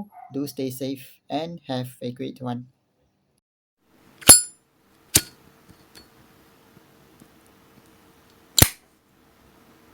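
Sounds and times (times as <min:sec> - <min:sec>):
sharp click: 0:08.6 - 0:08.8.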